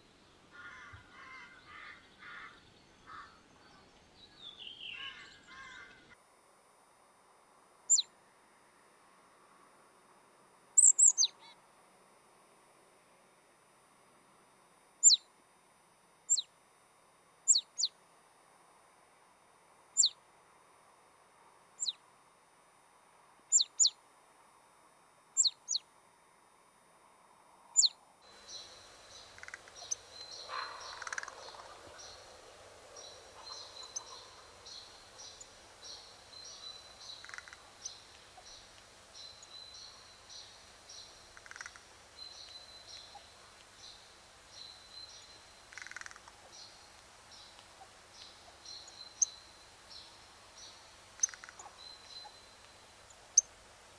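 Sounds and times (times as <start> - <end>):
songbird sharp high calls: 0.6 - 6.1, 10.8 - 11.4, 17.5 - 17.9, 20.0 - 20.2, 23.5 - 24.0, 25.4 - 25.8, 27.8 - 53.5
faint high twittering: 27.8 - 53.9.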